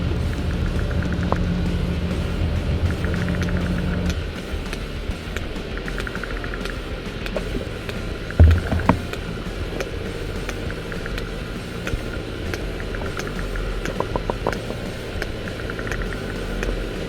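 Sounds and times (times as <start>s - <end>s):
steady low hum: 0.0s - 17.0s
loud low knocks: 8.4s - 9.3s.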